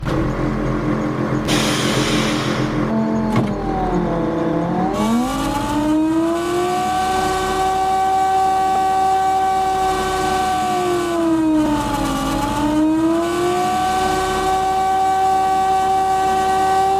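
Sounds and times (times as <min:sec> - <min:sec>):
engine running: 0:00.0 - 0:16.9
burst of hiss: 0:01.5 - 0:02.7.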